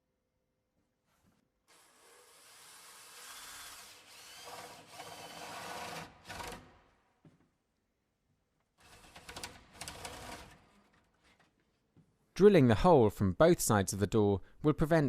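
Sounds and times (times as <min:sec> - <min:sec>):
power drill boring wood: 0:01.7 - 0:06.8.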